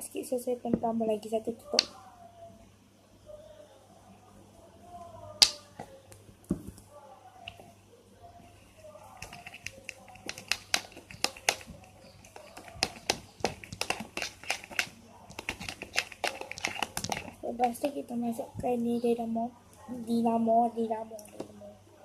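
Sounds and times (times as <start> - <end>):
faint background voices: 0.8 - 22.0
utensil tapping plastic container: 9.2 - 18.0.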